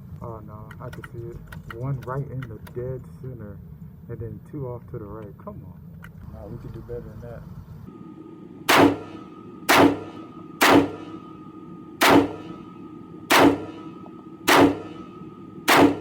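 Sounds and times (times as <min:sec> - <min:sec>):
rifle shots with ringing echo: 0:08.7 - 0:11.4, 0:12.0 - 0:16.0.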